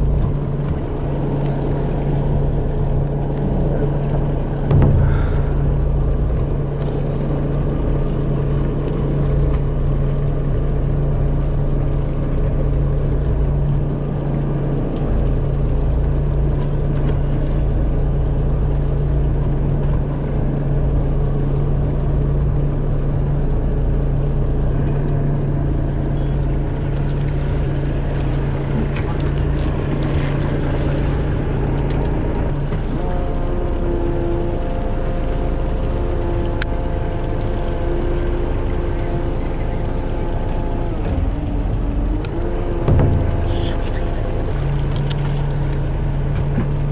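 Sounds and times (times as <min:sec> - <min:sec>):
boat engine humming: 0:04.7 - 0:09.1, 0:42.9 - 0:44.8.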